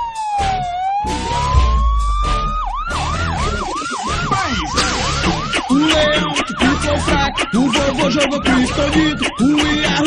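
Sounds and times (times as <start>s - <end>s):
siren wailing and yelping: 0.0s - 10.0s
dance beat with heavy bass: 3.8s - 10.0s.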